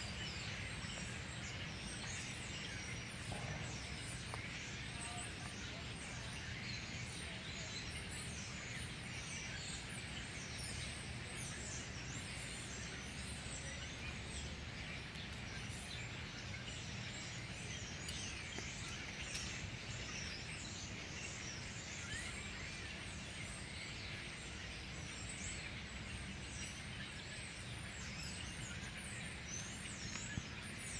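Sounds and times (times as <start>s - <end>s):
flock of birds chattering: 0.0s - 30.9s.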